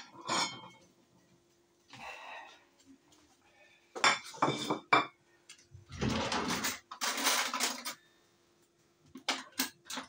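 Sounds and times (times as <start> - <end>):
dishes and cutlery clattering: 0.0 - 0.8, 4.0 - 5.2, 5.9 - 8.0, 9.2 - 10.0.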